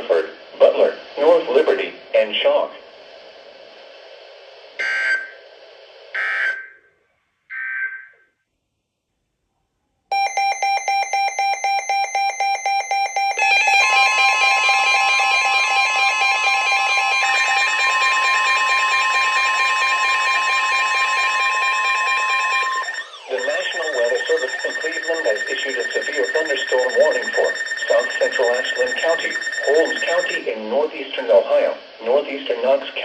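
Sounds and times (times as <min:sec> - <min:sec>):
receiver hiss: 0:00.0 - 0:06.9, 0:11.8 - 0:33.0
pulsing electronic alarm: 0:04.8 - 0:05.4, 0:06.2 - 0:06.8, 0:10.1 - 0:30.4
steady alert tone: 0:10.1 - 0:30.4
screeching data bursts: 0:10.2 - 0:30.4.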